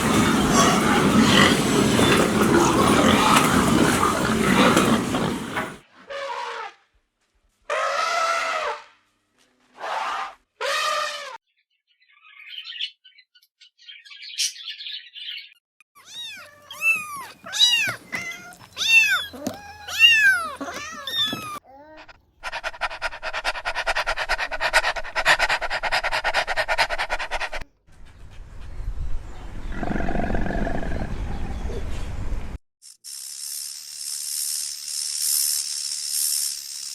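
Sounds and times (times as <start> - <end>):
buzzing animal rattle: 0.0 - 5.8, 32.8 - 36.9
loud rising-and-falling animal cries: 0.0 - 6.7.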